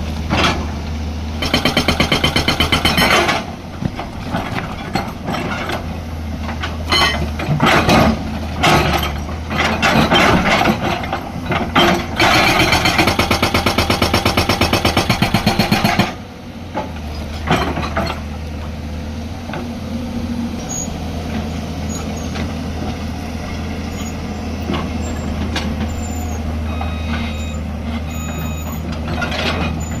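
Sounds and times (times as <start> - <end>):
excavator diesel engine running: 0.0 - 30.0
rock breaker hammering: 1.4 - 3.4
metal clanks and knocks: 1.4 - 13.5, 16.8 - 18.3, 28.8 - 30.0.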